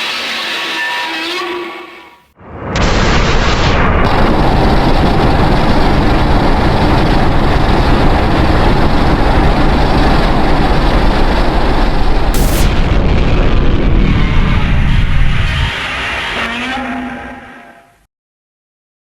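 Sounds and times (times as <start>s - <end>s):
loud rushing noise with deep rumble: 2.3s - 16.4s.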